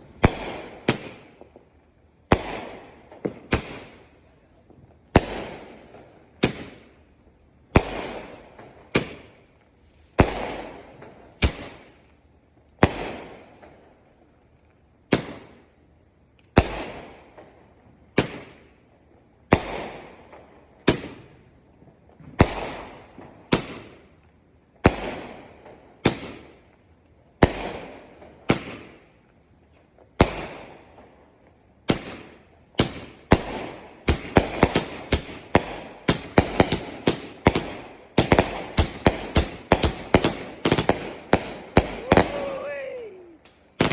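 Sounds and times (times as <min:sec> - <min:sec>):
fireworks banging: 0:00.0 - 0:06.9, 0:07.7 - 0:09.4, 0:31.8 - 0:43.9.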